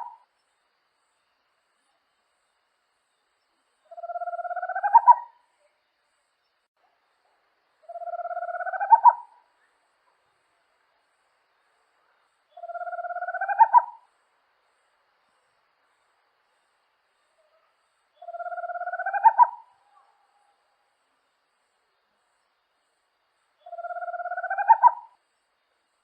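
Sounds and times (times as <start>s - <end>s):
owl trilling call: 0.0s - 0.2s, 3.9s - 5.4s, 7.8s - 9.4s, 12.6s - 14.1s, 18.2s - 20.1s, 23.6s - 25.2s.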